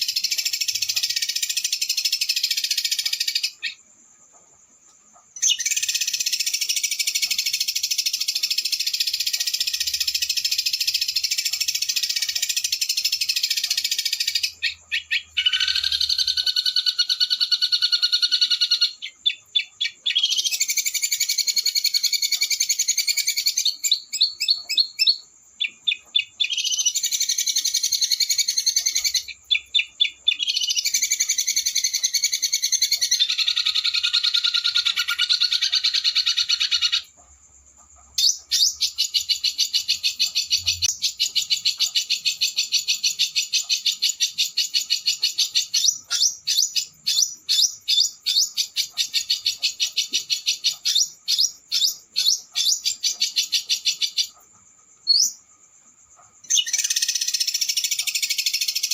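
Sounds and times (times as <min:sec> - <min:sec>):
songbird trilling and rattling: 0:05.4 - 0:37.2, 0:56.2 - 0:58.9.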